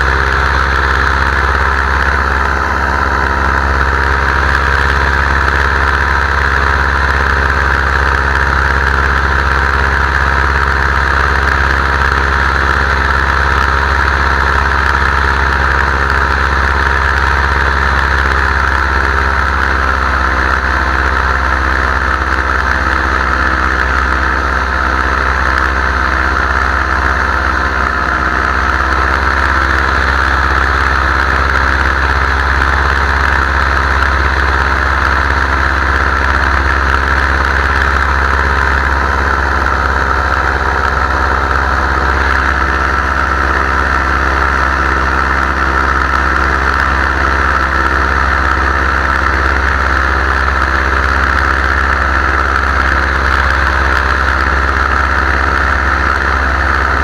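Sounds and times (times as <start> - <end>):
paramotor engine and propeller: 0.0 - 57.0.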